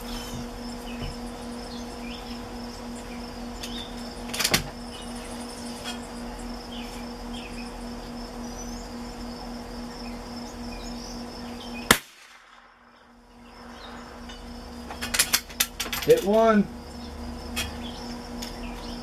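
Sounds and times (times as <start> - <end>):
insects chirping: 0.0 - 19.0
rifle shot crack: 11.9 - 13.1.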